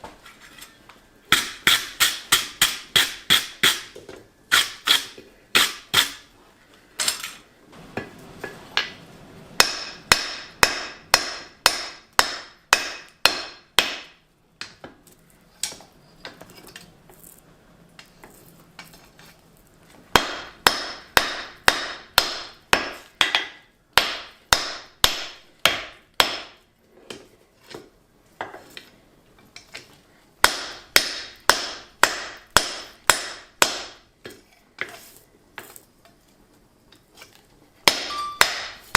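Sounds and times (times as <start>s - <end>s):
hammer striking hot steel: 9.6s - 14.2s, 37.9s - 38.9s.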